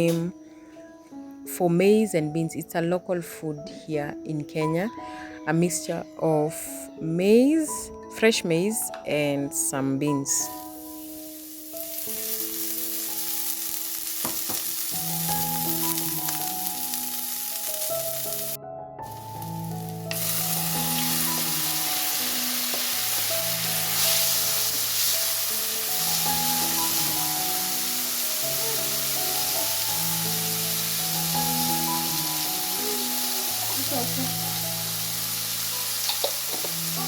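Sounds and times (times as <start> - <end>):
slow background melody: 0.0 - 37.0
food sizzling in a pan: 9.4 - 37.0.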